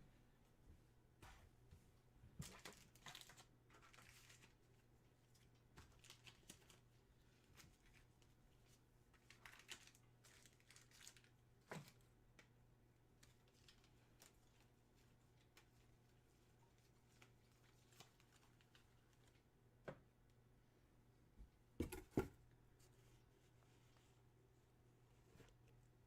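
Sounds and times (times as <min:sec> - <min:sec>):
packaging crinkling: 0:02.4 - 0:04.6, 0:05.4 - 0:06.9, 0:09.2 - 0:11.4.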